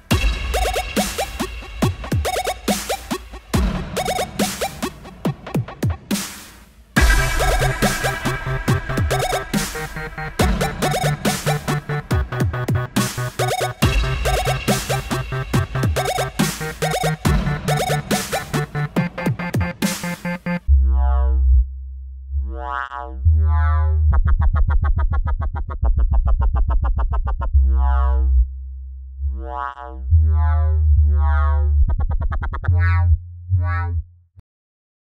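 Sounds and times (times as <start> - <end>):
electronic drum beat: 0.0 - 20.7
deep sub-bass: 7.0 - 17.8, 20.6 - 34.4
synth chord stabs: 7.0 - 20.6.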